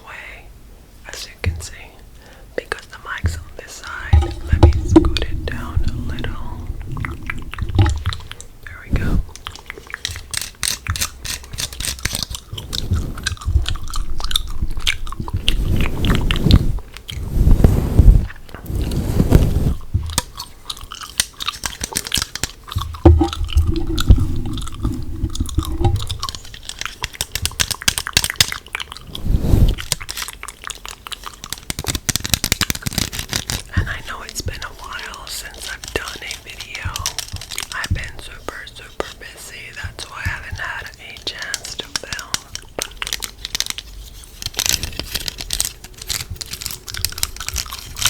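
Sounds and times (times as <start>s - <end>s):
gum chewing: 2.7s - 48.0s
dull low thumps: 4.0s - 9.3s, 23.1s - 26.3s.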